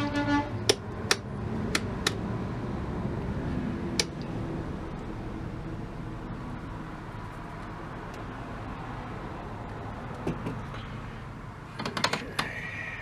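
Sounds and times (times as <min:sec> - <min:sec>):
knobs and switches clicking: 0:00.7 - 0:02.2, 0:04.0 - 0:04.3, 0:11.8 - 0:12.5.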